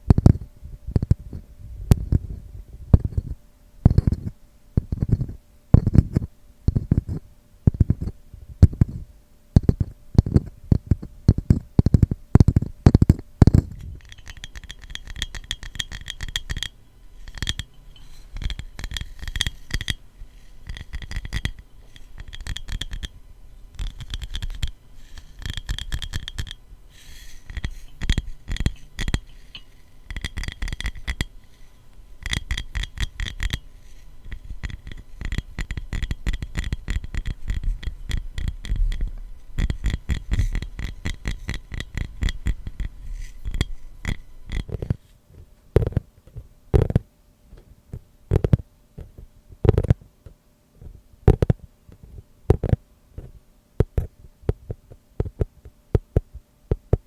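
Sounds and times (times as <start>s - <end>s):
tapping on wooden ladle: 9.6s - 23.2s, 23.8s - 45.0s
tapping on glass bottle: 9.6s - 45.0s.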